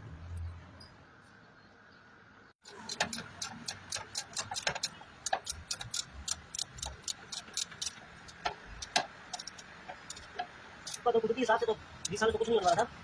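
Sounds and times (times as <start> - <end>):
sharp clicks and light knocks: 2.6 - 11.1.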